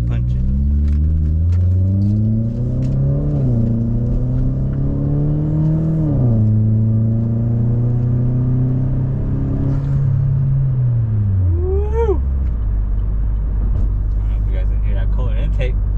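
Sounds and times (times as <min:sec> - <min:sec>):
car engine accelerating hard: 0:00.0 - 0:15.9.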